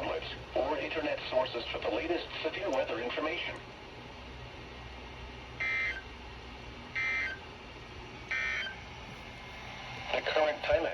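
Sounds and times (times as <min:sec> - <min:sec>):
low radio hum: 0:08.6 - 0:10.9.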